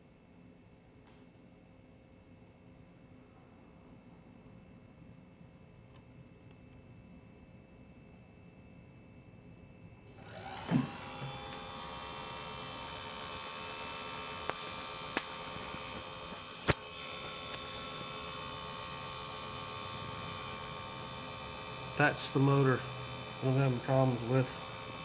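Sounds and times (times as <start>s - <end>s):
click: 10.1s - 19.7s
drone motors whining: 10.1s - 25.0s.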